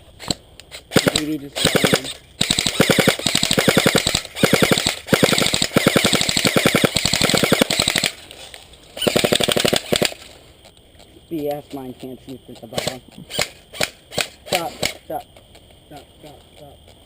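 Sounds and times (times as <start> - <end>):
airsoft gun firing bursts: 0.9 - 8.2, 9.0 - 10.2.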